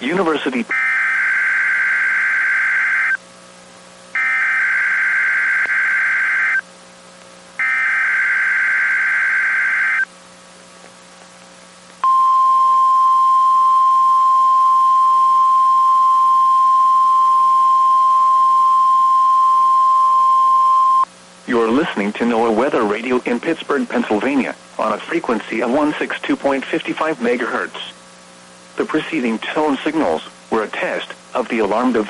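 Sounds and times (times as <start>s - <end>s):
harsh digital data buzzing bursts: 0.4s - 3.2s, 4.2s - 6.6s, 7.6s - 10.1s
steady warning alarm tone: 0.7s - 3.2s, 4.2s - 6.6s, 7.6s - 10.1s.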